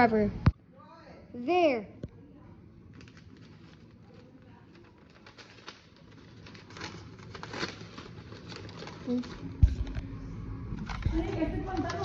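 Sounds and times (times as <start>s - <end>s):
paper and tape rustling: 2.9s - 10.1s, 10.7s - 12.0s.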